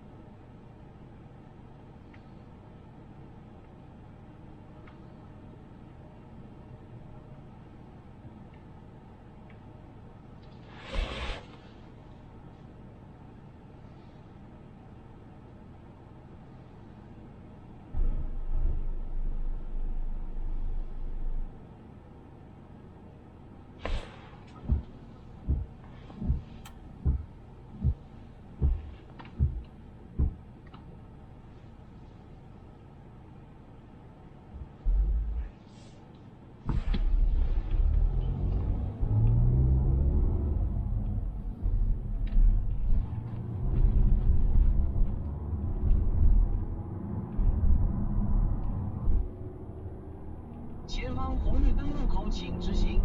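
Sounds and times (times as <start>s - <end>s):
road noise: 0.0s - 53.0s
turn signal ticking: 24.6s - 28.0s, 28.6s - 30.8s.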